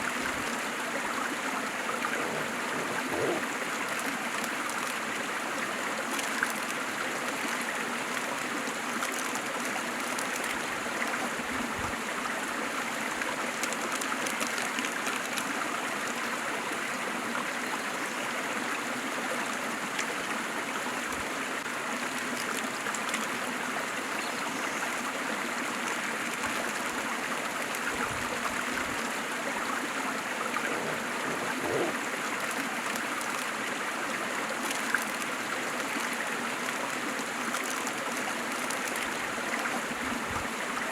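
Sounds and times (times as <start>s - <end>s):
waterfall rushing: 30.2s - 32.3s.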